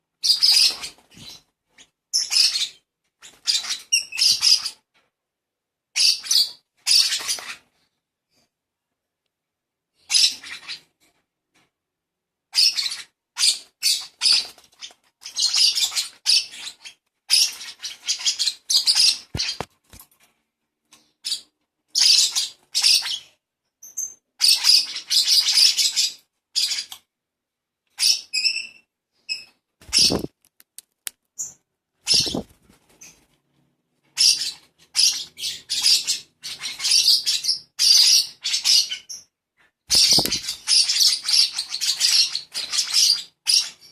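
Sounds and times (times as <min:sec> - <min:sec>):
baby bird calling: 0:15.2 - 0:19.7, 0:29.8 - 0:30.4, 0:31.4 - 0:32.6, 0:39.9 - 0:43.8
bird chirps: 0:27.9 - 0:30.3, 0:31.4 - 0:33.2, 0:39.9 - 0:43.9.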